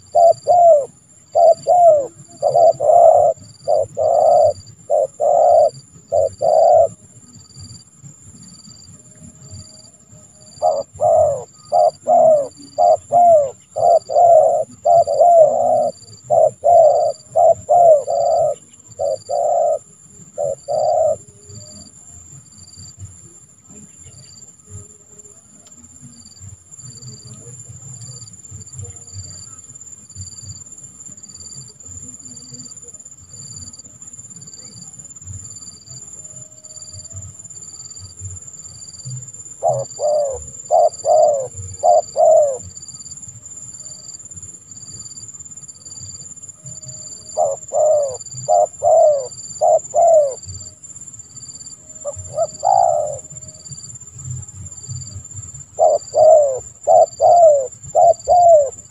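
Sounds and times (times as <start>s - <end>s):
dove cooing: 0.0s - 7.1s, 10.5s - 21.9s, 38.5s - 44.2s, 46.0s - 53.9s, 55.0s - 58.9s
high insect buzz: 0.0s - 58.9s
pulsing insect chirps: 0.0s - 58.9s.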